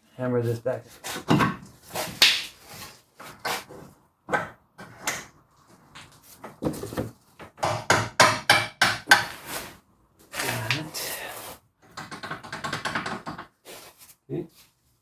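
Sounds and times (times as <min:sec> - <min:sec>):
hammer strikes on metal: 0:07.6 - 0:09.4.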